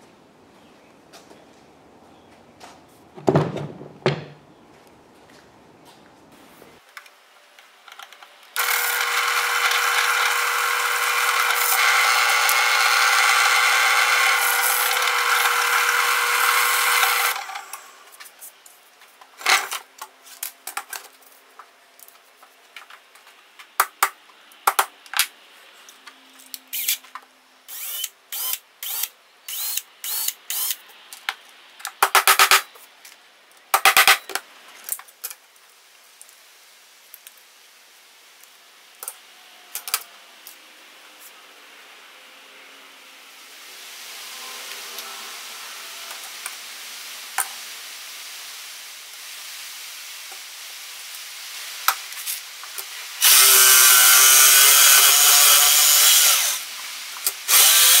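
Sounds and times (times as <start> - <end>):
power drill running: 8.6 - 17.9, 27.7 - 30.8, 53.2 - 56.6, 57.5 - 58.0.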